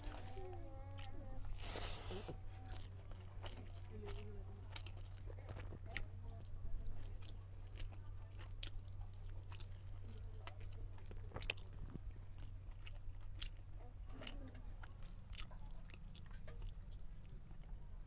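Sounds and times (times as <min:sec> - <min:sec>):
person chewing food: 0:00.0 - 0:18.0
steady low hum: 0:00.0 - 0:18.0.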